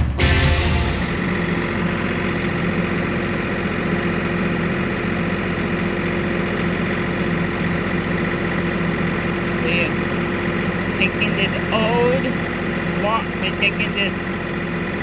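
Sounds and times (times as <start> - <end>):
tractor engine idling: 0.0 - 15.0.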